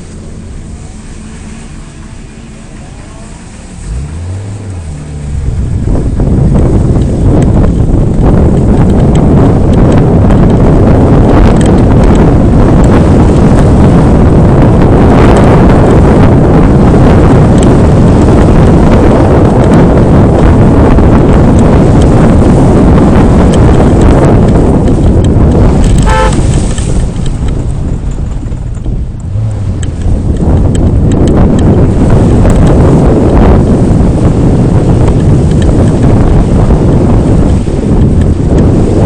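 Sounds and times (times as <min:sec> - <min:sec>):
off-road vehicle engine noise: 0:00.0 - 0:39.0
horn toot: 0:26.0 - 0:26.6.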